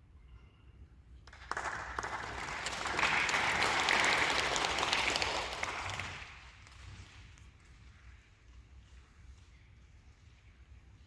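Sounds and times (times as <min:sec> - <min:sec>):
audience applauding: 0:01.3 - 0:07.0.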